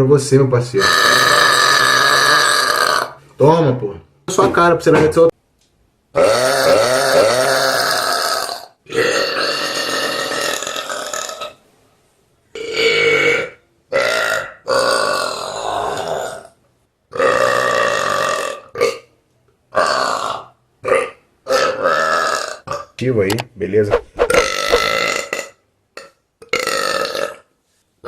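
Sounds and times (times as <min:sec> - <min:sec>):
person burping loudly: 0:00.8 - 0:03.2, 0:06.2 - 0:11.6, 0:12.6 - 0:16.5, 0:17.1 - 0:19.1, 0:19.7 - 0:22.8, 0:26.4 - 0:27.5.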